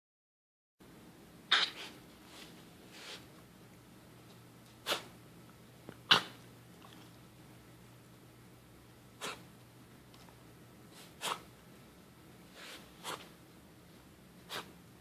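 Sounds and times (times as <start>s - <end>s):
animal coughing: 9.2s - 9.4s.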